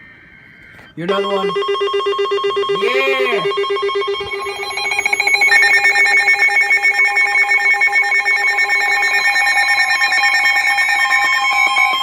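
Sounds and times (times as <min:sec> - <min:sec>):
rapid ringing alarm trill: 0:01.0 - 0:12.0.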